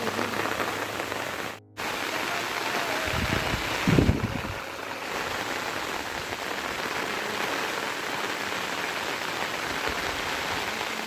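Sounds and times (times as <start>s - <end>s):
steady rain falling: 0.0s - 11.0s.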